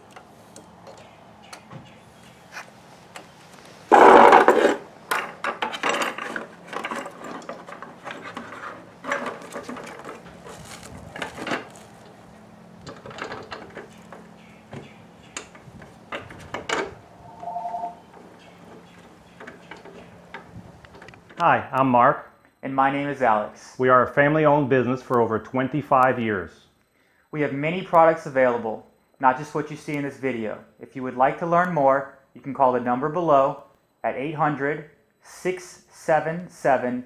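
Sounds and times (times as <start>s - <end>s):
parts clanking and clicking: 3.1s - 12.2s, 12.8s - 17.4s, 18.1s - 21.4s.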